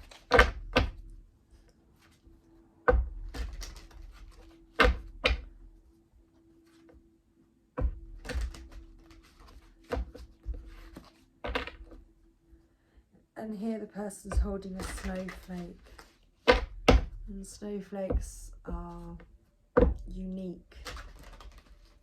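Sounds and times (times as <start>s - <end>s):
cards knocking and clattering: 0.0s - 1.1s, 2.9s - 5.6s, 7.8s - 12.0s, 14.3s - 17.3s, 20.7s - 22.0s.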